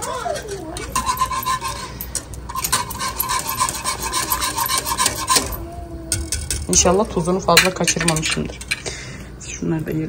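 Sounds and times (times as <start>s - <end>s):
utensil scraping cooking pot: 0.0s - 5.6s.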